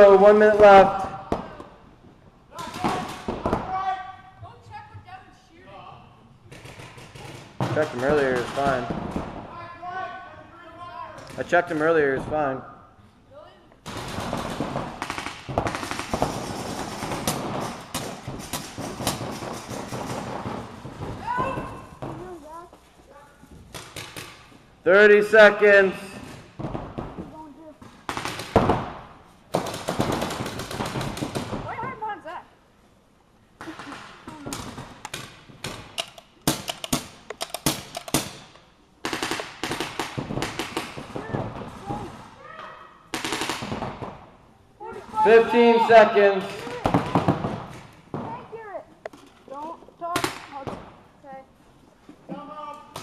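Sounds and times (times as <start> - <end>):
paintball markers firing rapidly: 6.5 - 9.3, 13.8 - 21.2, 33.6 - 41.2
paintball markers firing: 33.6 - 41.2.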